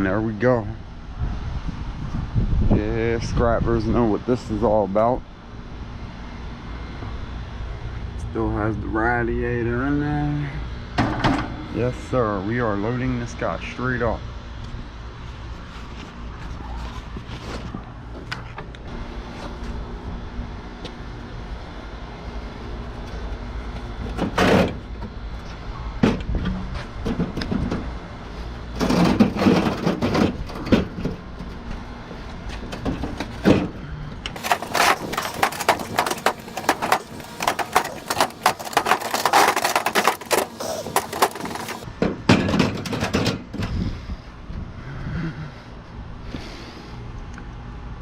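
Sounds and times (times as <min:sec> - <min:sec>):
metal clunks and knocks: 0:11.0 - 0:11.8, 0:34.4 - 0:43.7
metallic clatter and scraping: 0:11.0 - 0:12.1, 0:28.7 - 0:31.6, 0:34.4 - 0:43.6.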